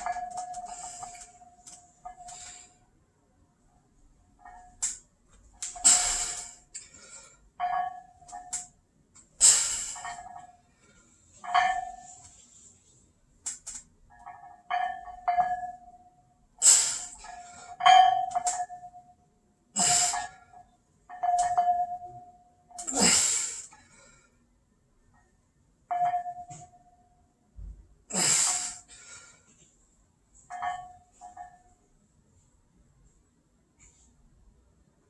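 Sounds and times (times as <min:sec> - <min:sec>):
barbell plates ringing: 0:00.0 - 0:02.7, 0:05.6 - 0:06.9, 0:07.6 - 0:08.7, 0:09.4 - 0:10.6, 0:11.3 - 0:12.3, 0:14.1 - 0:19.2, 0:19.8 - 0:23.6, 0:25.9 - 0:27.0, 0:30.4 - 0:31.8.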